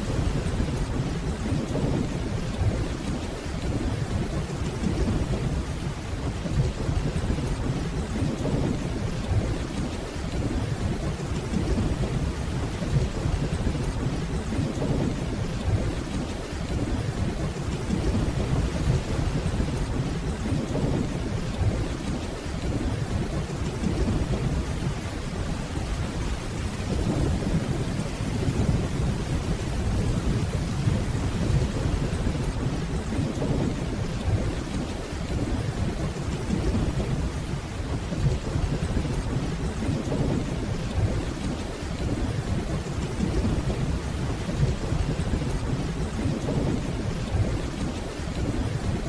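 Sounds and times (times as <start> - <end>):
distant thunder rumble: 0.0 - 49.0
steady rainfall: 0.0 - 49.0.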